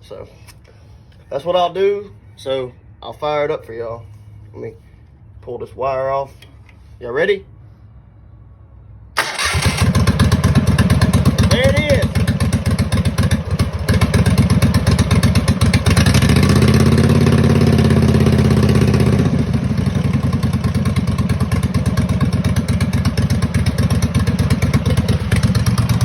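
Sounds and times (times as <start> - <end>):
mower engine chugging: 9.2 - 26.0.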